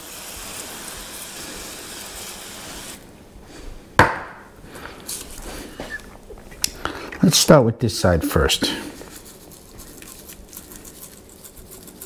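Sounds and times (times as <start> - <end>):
cooking spray hissing: 0.0 - 3.1
sharp knock: 4.0 - 4.4.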